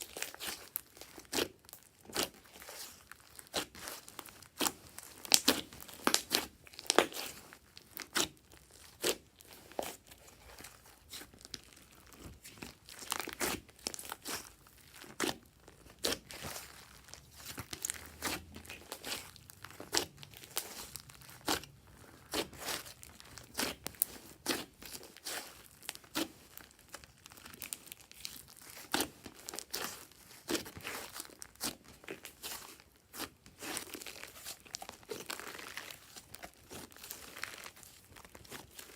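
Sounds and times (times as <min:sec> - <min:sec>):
slime squishing with sticky pops: 0:00.0 - 0:38.9.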